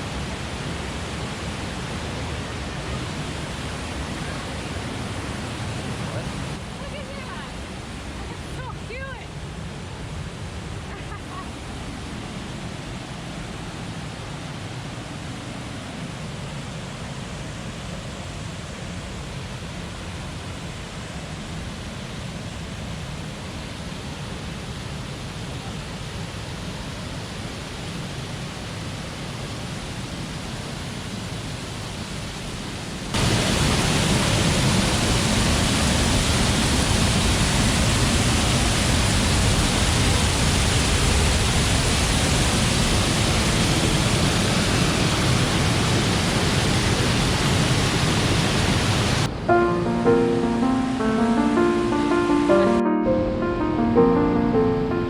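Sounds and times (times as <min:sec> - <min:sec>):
waterfall rushing: 0:33.2 - 0:37.8.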